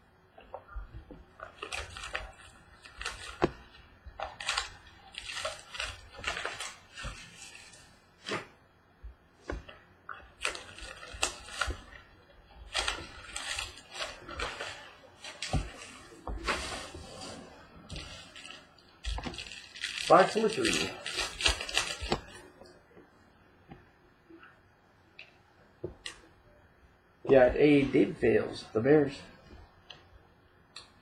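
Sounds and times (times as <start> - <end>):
rustling and crinkling wrappers: 0.4 - 8.5, 9.4 - 22.9.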